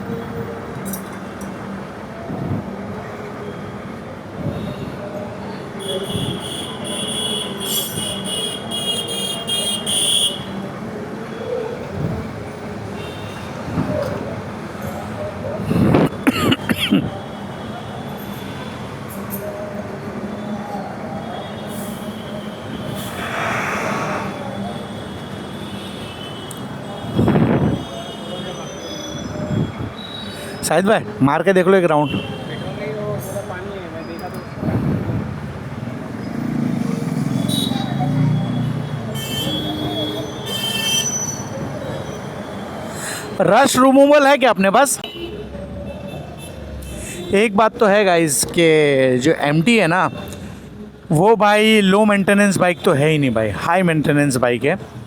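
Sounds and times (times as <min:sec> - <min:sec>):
street traffic hum: 0:00.0 - 0:55.0
rushing swell: 0:23.0 - 0:24.7
vehicle engine: 0:34.8 - 0:38.9.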